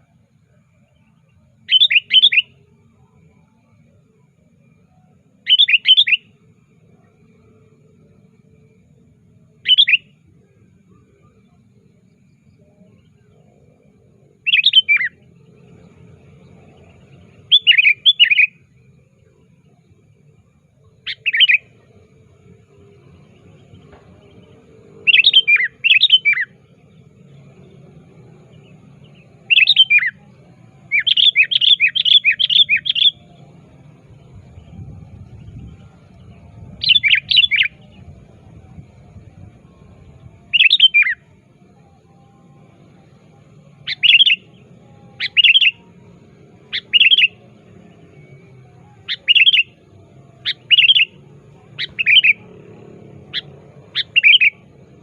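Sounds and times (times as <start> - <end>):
bulbul calling: 1.6 - 2.8, 4.9 - 7.6, 9.6 - 10.2, 12.6 - 20.2, 20.8 - 55.0.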